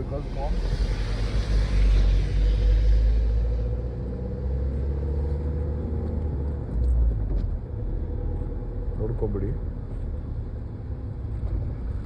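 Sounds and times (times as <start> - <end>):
rushing noise: 0.0 - 4.5
car engine and road rumble: 0.0 - 12.0.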